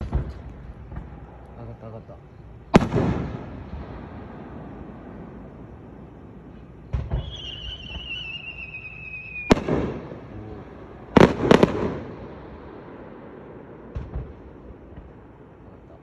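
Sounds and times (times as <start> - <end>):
firework launch thump: 0.0 - 1.1
loud firework bangs: 0.0 - 1.4, 2.7 - 15.5
firework whistle: 6.9 - 9.8.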